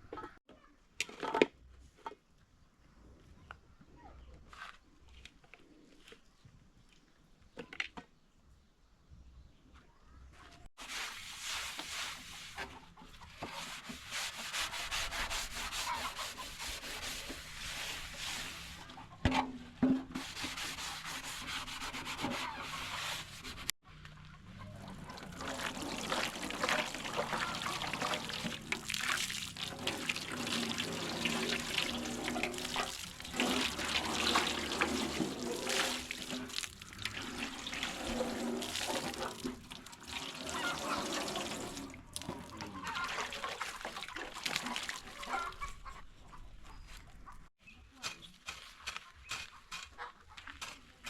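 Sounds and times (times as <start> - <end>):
rubbing and scraping: 10.8 - 23.8, 25.0 - 45.9
watery sounds: 24.7 - 45.7.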